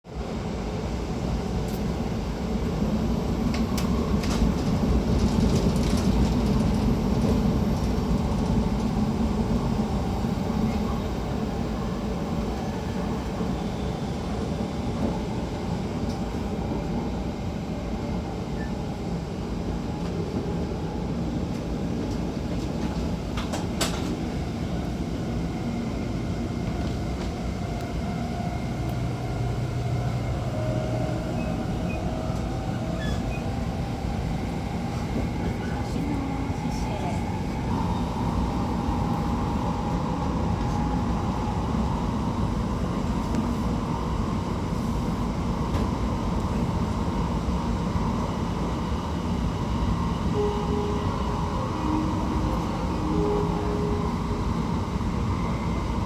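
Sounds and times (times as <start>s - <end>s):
train running rumble: 0.1s - 56.0s.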